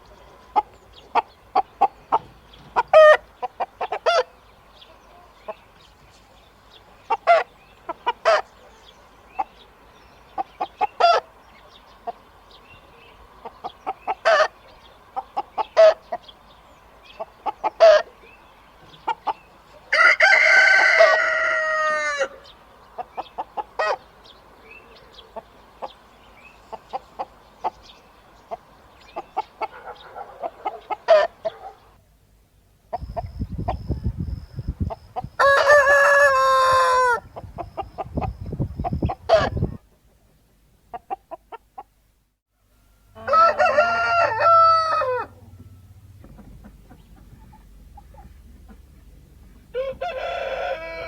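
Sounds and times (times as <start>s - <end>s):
chickens clucking: 0.0s - 6.0s, 6.7s - 32.0s, 32.9s - 42.0s, 43.2s - 51.0s
rooster crowing: 19.9s - 22.5s, 35.4s - 37.2s, 43.1s - 45.9s, 49.7s - 51.0s
low rumble: 45.3s - 49.8s.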